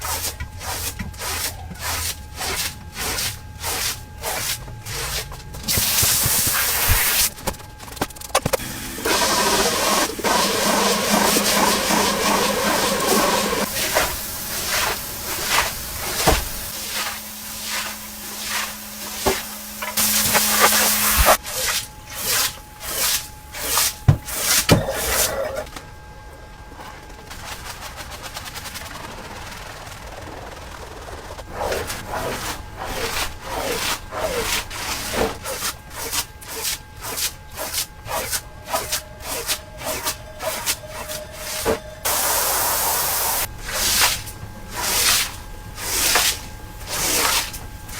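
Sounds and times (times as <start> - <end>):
carpet being scrubbed: 0.0 - 7.4, 8.6 - 25.7, 30.9 - 47.9
spray hiss: 5.7 - 7.3, 8.6 - 24.6, 39.3 - 44.1.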